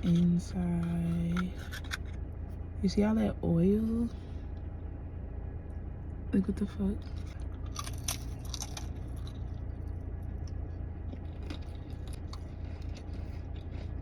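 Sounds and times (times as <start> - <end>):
cracker crunching: 0.0 - 2.6, 7.0 - 14.0
steady low hum: 0.0 - 14.0.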